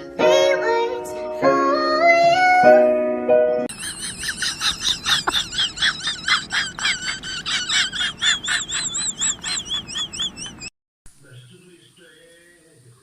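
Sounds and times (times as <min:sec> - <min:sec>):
animal chirping: 0:03.7 - 0:10.7.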